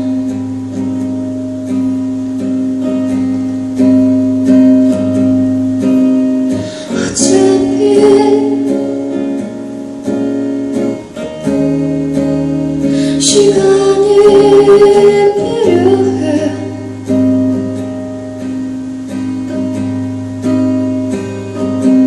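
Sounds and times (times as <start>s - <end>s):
acoustic guitar strumming chords: 0.0s - 22.0s
woman singing: 6.5s - 9.5s, 12.8s - 17.7s.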